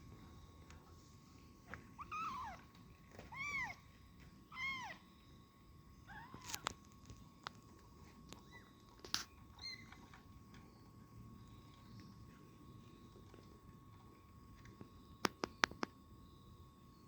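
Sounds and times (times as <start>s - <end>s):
kitten meowing: 2.0s - 2.6s.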